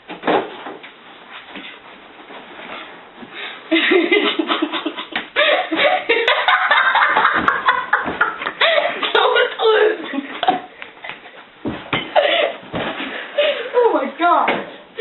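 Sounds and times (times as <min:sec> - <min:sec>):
people laughing loudly: 0:03.7 - 0:10.7.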